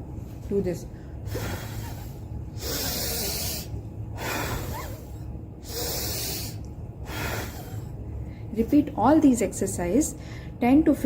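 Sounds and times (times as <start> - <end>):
soft breaths: 0.9 - 8.6
woman blowing forceful breaths: 1.0 - 8.5.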